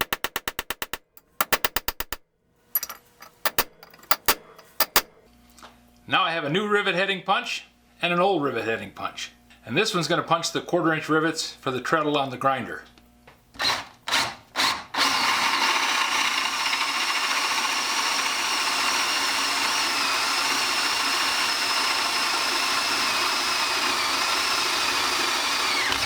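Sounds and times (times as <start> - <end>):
power tool motor whining: 13.6 - 26.0.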